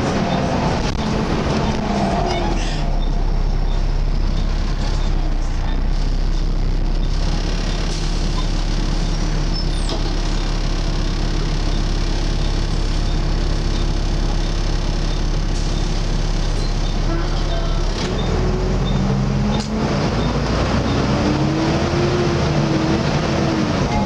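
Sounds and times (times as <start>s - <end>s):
diesel bus engine running: 0.0s - 24.0s
droning whoosh of bus: 0.0s - 24.0s.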